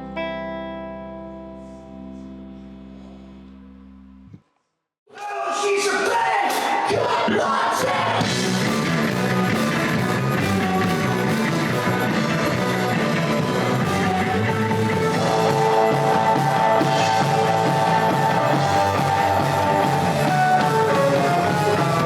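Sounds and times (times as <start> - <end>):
rock music with electric guitar: 0.0 - 3.0, 8.1 - 22.0
repeating bass line: 8.2 - 22.0.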